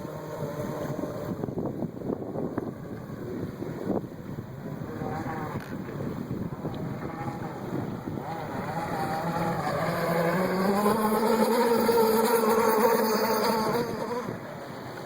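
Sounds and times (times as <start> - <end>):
two-stroke engine running at speed: 6.4 - 14.5.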